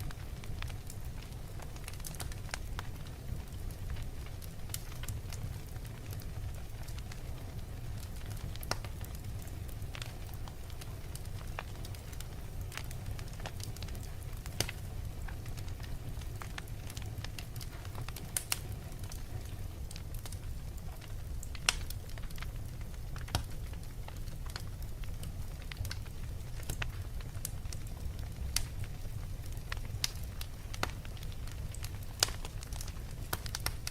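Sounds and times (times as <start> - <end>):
fire crackling and popping: 0.0 - 33.9.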